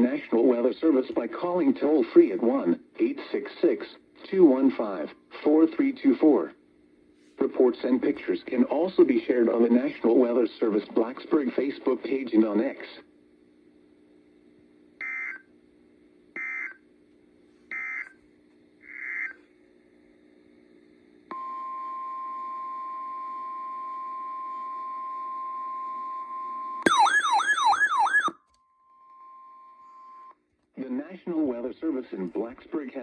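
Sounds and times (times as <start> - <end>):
low radio hum: 0.0 - 28.3, 29.1 - 33.0
warbling alert tone: 26.9 - 28.3.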